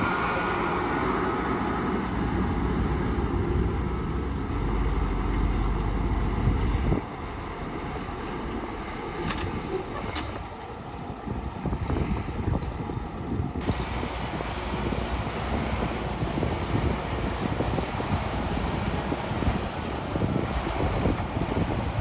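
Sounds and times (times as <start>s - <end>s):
heavy construction machinery running: 0.0s - 22.0s
wind buffeting microphone: 0.0s - 22.0s.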